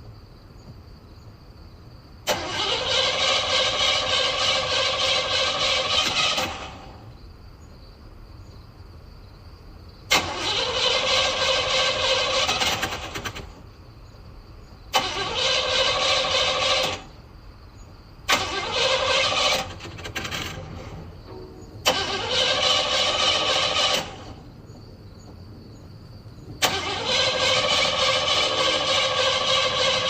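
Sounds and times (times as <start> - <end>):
car engine cranking: 2.3 - 7.1, 10.1 - 13.6, 14.9 - 17.2, 18.3 - 24.5, 26.6 - 30.0.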